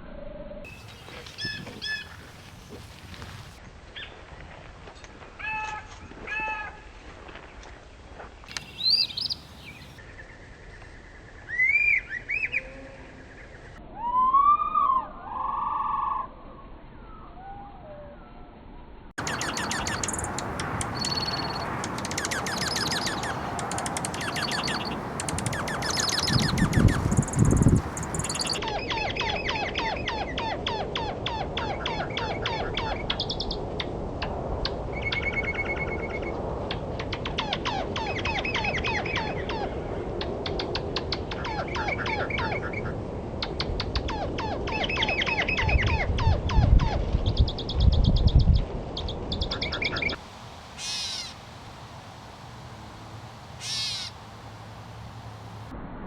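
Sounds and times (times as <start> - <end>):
slowed down bird calls: 0.7 - 3.5, 8.5 - 16.3, 19.2 - 33.6, 49.6 - 55.6.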